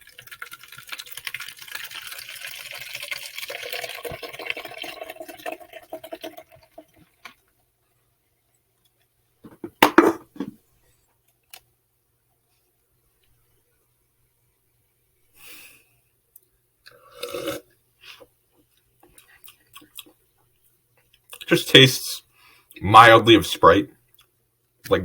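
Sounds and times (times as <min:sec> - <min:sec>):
fizzy drink poured into a cup: 0:00.0 - 0:07.2.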